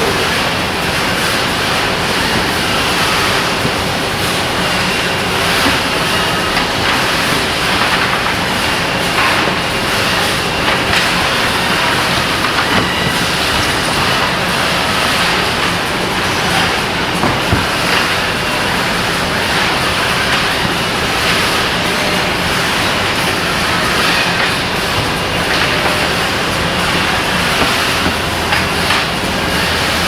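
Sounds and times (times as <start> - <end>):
machinery noise with rattle: 0.0 - 30.0.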